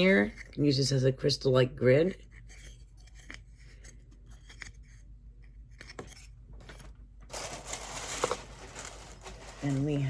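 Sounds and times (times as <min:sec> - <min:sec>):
packaging rustling: 0:06.0 - 0:10.0.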